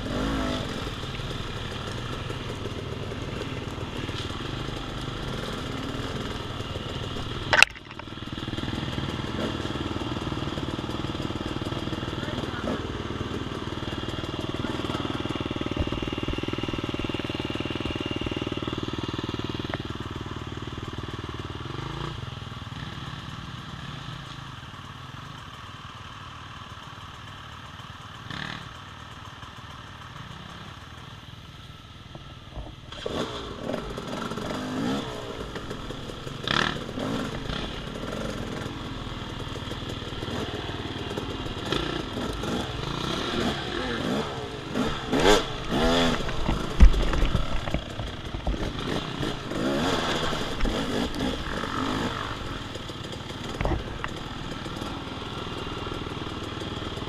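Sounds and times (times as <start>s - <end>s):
dirt bike engine running: 0.0s - 57.0s
clattering knocks over rough trail: 45.0s - 55.0s.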